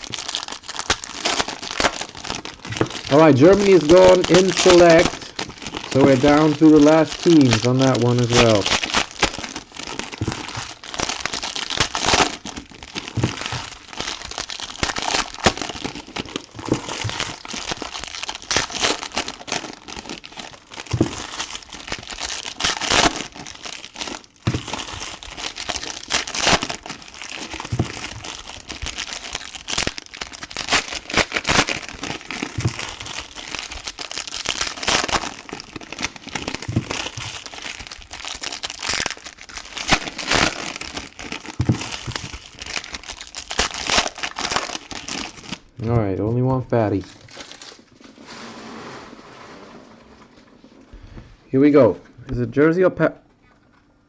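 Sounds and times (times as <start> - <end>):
plastic wrappers crinkling: 0.0 - 48.4
cards shuffling: 1.8 - 9.4.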